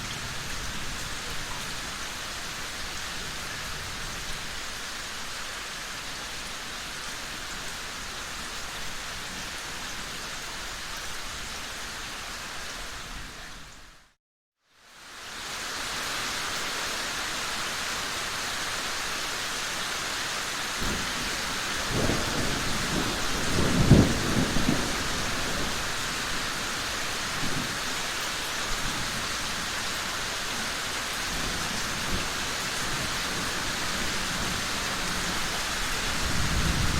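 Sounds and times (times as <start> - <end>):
steady rain falling: 0.0 - 36.9
thunder rumbling: 20.8 - 26.5, 34.4 - 36.9.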